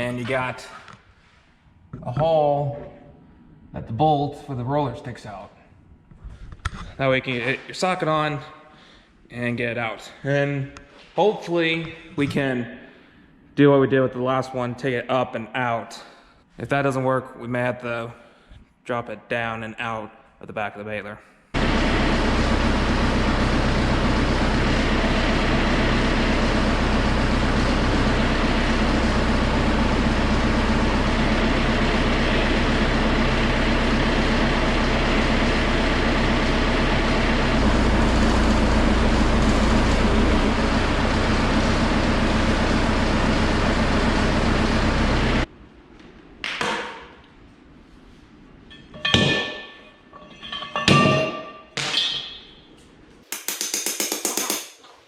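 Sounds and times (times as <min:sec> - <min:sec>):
engine running steadily: 0:21.6 - 0:45.5.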